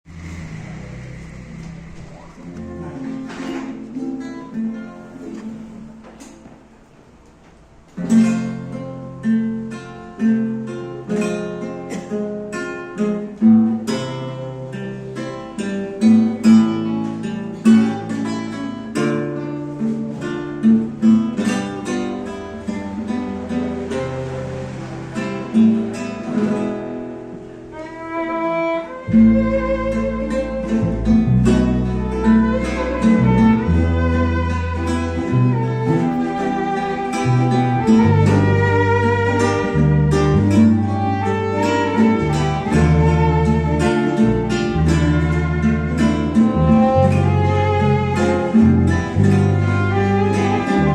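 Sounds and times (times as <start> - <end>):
violin wavering line: 0.0 - 4.7, 27.6 - 50.9
electric bass: 0.0 - 4.8, 20.8 - 50.9
cuatros and guitar plucking: 0.0 - 50.9.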